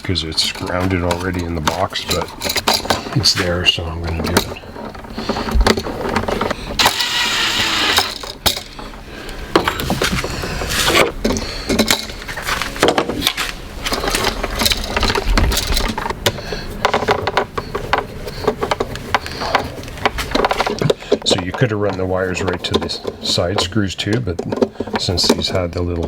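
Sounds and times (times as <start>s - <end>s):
screwdriver turning screws: 5.7s - 8.4s.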